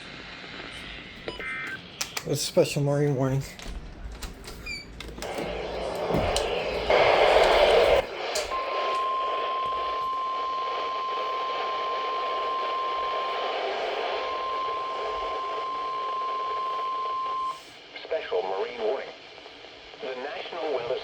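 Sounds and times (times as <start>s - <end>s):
receiver hiss: 0.0s - 21.0s
burst of noise: 5.2s - 9.9s
weather radio alert tone: 5.2s - 11.6s.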